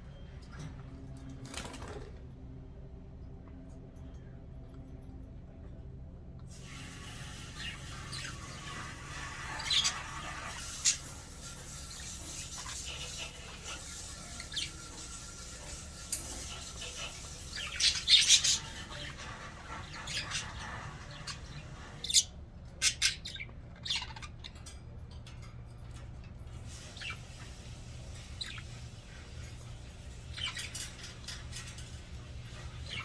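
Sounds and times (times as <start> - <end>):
budgerigars chirping and squawking: 6.6 - 33.0.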